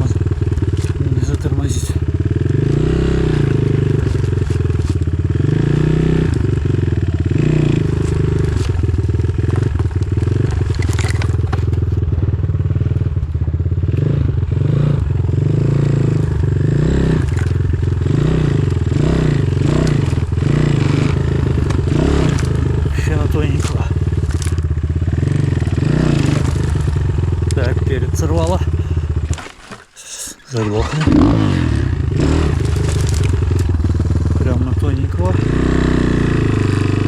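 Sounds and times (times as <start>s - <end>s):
motorcycle engine revving: 0.0s - 29.8s, 30.5s - 37.0s
clatter and knocks: 9.6s - 12.0s.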